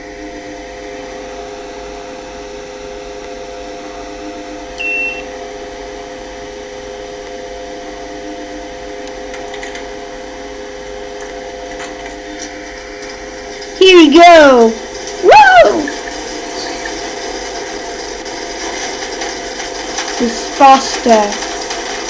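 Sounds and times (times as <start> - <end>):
steady electrical hum: 0.0 - 22.0
short high beep: 4.8 - 5.2.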